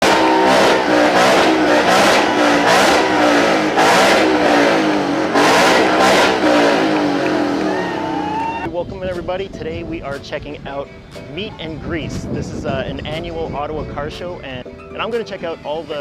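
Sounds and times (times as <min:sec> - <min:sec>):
car engine revving: 0:00.0 - 0:08.7.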